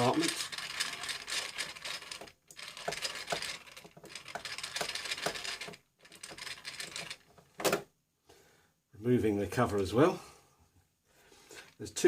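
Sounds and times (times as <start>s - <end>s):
screwdriver scraping screw: 0.0s - 7.4s.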